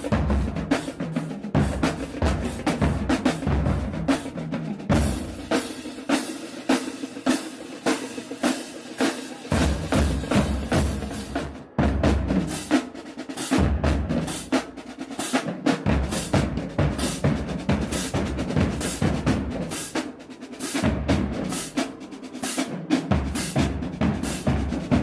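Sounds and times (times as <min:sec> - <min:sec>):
snare drum strokes: 0:00.0 - 0:25.0
bass drums: 0:09.5 - 0:12.5.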